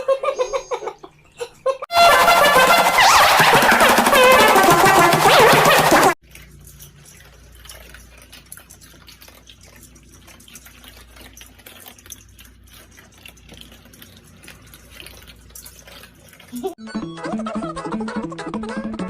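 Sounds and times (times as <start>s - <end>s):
faint water trickling: 6.2s - 16.8s.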